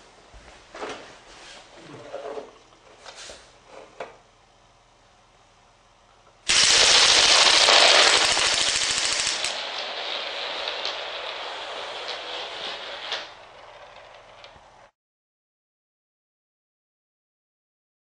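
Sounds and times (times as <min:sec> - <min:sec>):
toy machine gun rapid clatter: 0:06.5 - 0:09.6.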